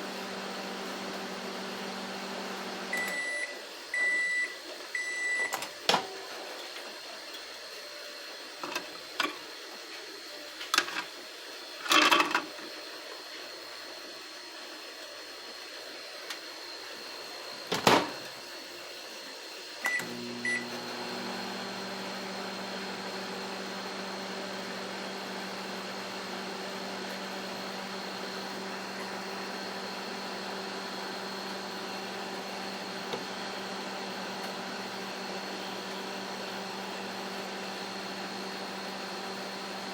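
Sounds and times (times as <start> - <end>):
microwave oven humming: 0.0 - 5.7, 19.8 - 39.9.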